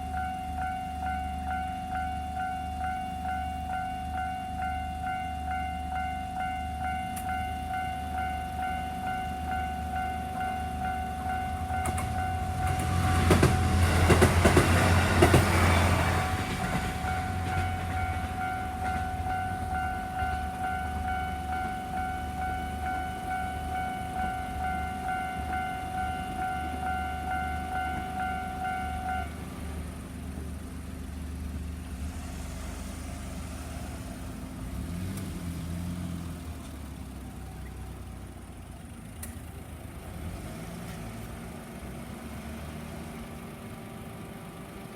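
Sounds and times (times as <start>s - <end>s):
level crossing warning bell: 0.0s - 31.4s
diesel train passing: 0.0s - 44.9s
train wheel clatter: 11.5s - 22.0s.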